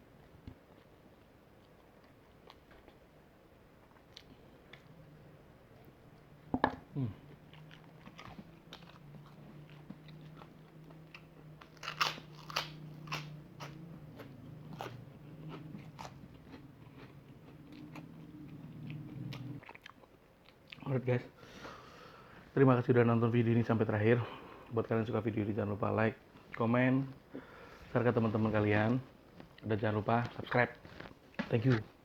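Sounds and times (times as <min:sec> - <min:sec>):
low steady hum: 0:00.0 - 0:32.0
chewing crispy fried chicken: 0:00.2 - 0:03.1, 0:06.9 - 0:20.9.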